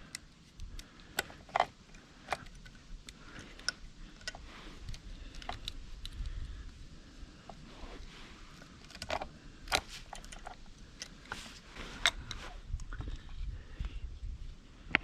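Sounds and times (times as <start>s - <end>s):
small metallic clicks: 0.0s - 6.8s, 8.5s - 13.0s.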